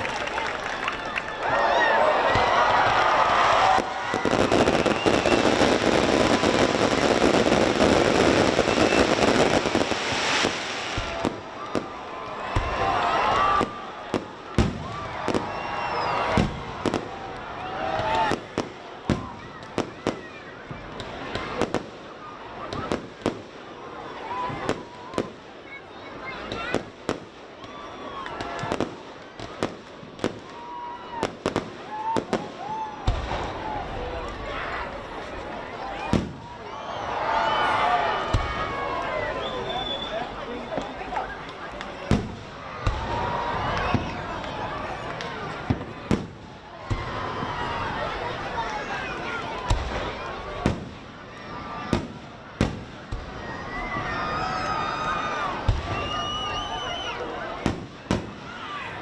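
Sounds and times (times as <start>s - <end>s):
fireworks crackling pops: 0.0s - 23.7s, 26.4s - 59.0s
fireworks sharp bangs: 2.2s - 23.6s, 31.2s - 36.6s, 37.4s - 54.1s, 55.6s - 56.2s, 57.2s - 59.0s.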